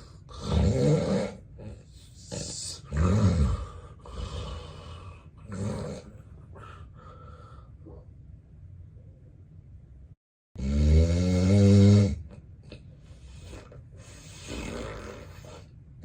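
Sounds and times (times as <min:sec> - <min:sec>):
quiet breathing: 0:00.0 - 0:00.6, 0:01.6 - 0:08.4, 0:12.7 - 0:15.8
man snoring heavily: 0:00.0 - 0:06.1, 0:10.6 - 0:12.2, 0:14.2 - 0:15.6
snort: 0:00.0 - 0:06.8, 0:10.6 - 0:15.7.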